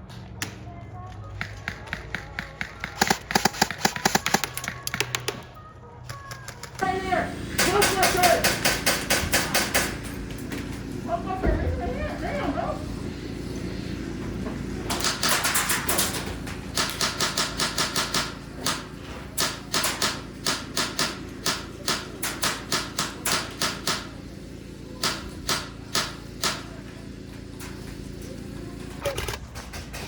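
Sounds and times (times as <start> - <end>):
airsoft gun shots: 1.7 - 5.4.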